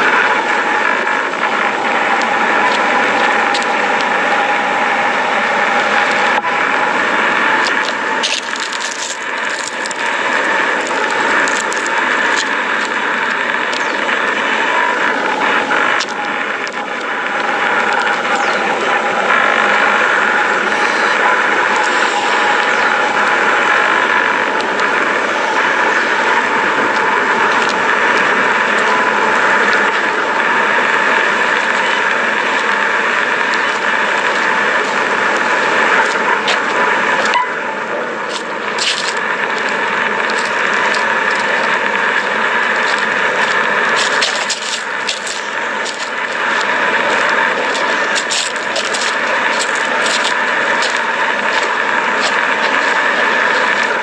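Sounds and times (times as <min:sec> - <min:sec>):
steady rushing noise: 0:00.0 - 0:54.0
lava crust cracking: 0:07.4 - 0:18.4, 0:38.3 - 0:54.0.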